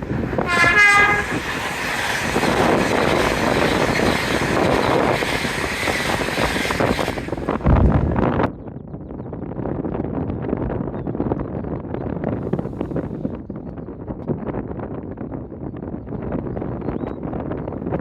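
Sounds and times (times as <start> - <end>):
train horn: 0.0 - 7.5
train rushing past: 0.0 - 8.5
wind gust on microphone: 0.0 - 18.0.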